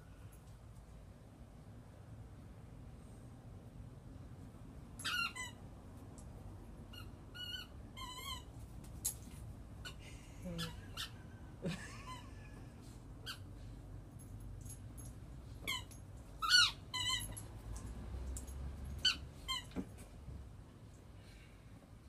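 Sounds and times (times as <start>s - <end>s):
squeaky rubber toy squeaking: 5.0s - 5.6s, 6.9s - 8.6s, 15.6s - 17.5s, 19.0s - 19.8s.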